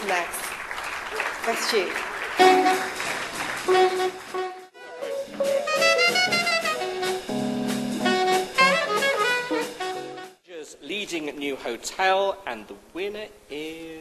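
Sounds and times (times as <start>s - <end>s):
jazz band music: 1.1s - 11.2s.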